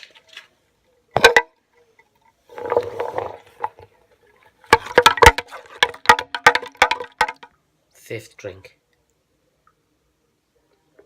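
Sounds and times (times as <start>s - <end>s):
knocks of small objects: 1.2s - 1.6s, 4.7s - 7.6s
scraping rustle: 2.4s - 4.8s.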